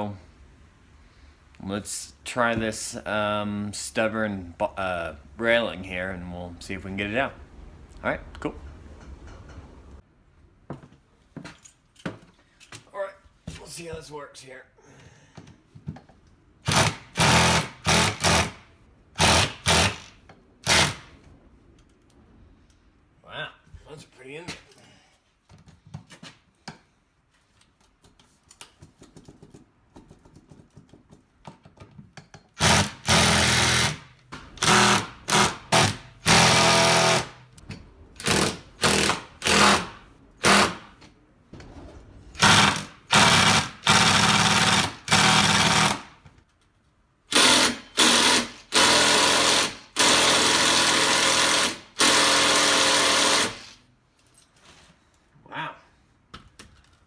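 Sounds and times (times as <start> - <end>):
impact driver hammering: 32.5 - 37.4, 38.2 - 41.0, 42.4 - 46.1, 47.3 - 53.6.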